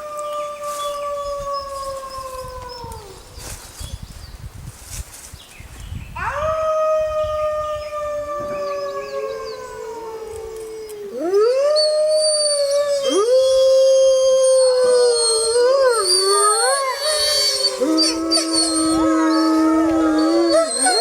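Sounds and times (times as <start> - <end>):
wolves howling: 6.2 - 21.0.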